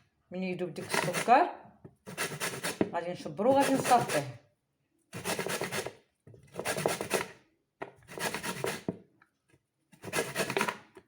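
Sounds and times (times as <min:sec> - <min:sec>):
lemon grated on hand grater: 0:03.5 - 0:04.3, 0:10.0 - 0:10.7.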